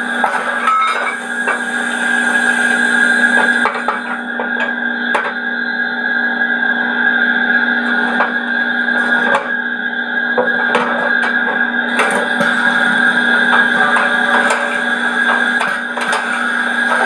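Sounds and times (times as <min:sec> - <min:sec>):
model locomotive whine and hum: 0:00.0 - 0:17.0.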